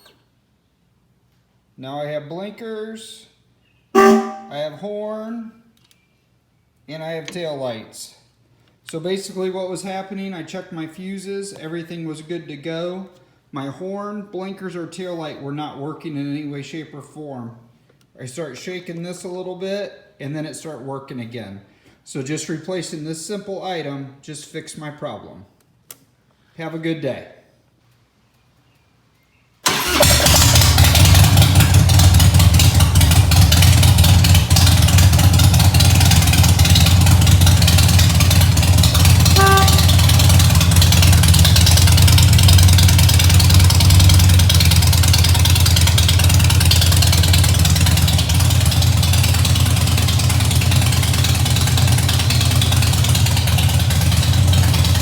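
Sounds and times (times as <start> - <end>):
short pitched tone: 4.0 - 4.6, 39.3 - 40.2
motorcycle engine idling: 29.8 - 55.0.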